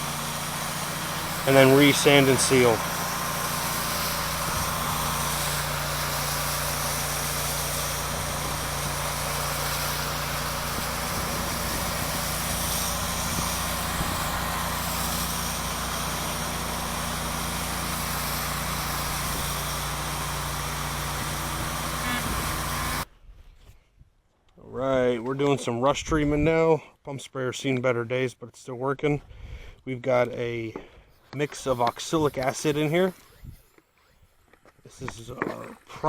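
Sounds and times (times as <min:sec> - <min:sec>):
pressure washer engine humming: 0:00.0 - 0:23.1, 0:31.1 - 0:35.8
steady hiss: 0:00.8 - 0:14.1, 0:31.1 - 0:34.1.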